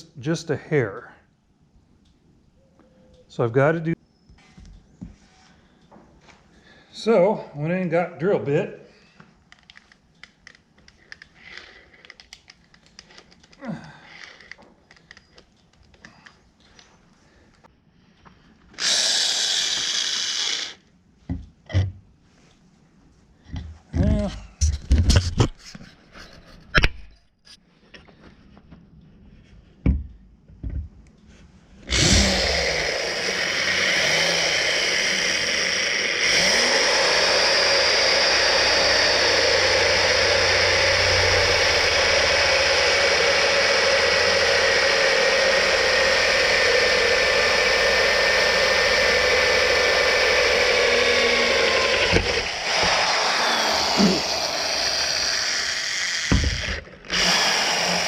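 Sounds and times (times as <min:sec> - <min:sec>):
power drill boring: 0:11.4 - 0:12.3, 0:14.0 - 0:15.3, 0:18.8 - 0:20.8, 0:31.8 - 0:58.0.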